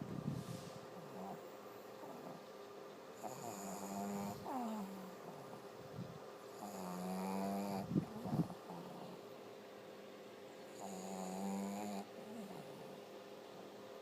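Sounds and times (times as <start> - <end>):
dog breathing quietly: 0.3 - 2.5
dog snoring: 1.0 - 2.5, 3.2 - 5.6, 6.5 - 9.2, 10.7 - 13.7.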